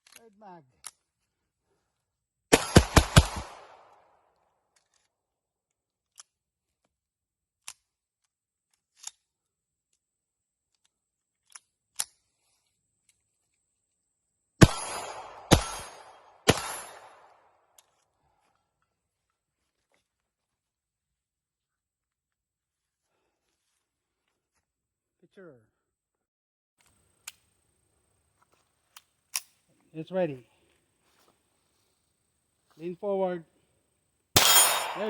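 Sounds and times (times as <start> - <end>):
pistol shots: 2.5 - 4.0, 14.6 - 17.5, 34.4 - 35.0.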